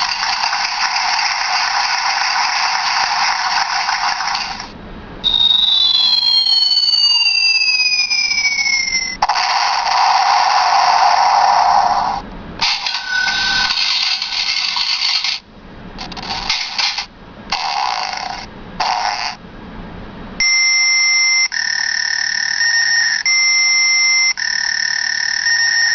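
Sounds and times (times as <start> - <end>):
short electronic beep: 5.2 - 6.5
hiss-like electronic effect: 8.9 - 15.4.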